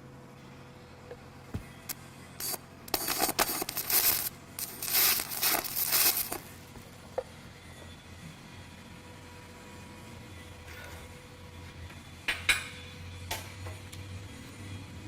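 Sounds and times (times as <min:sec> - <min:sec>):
welding arc crackling: 0:02.4 - 0:06.5.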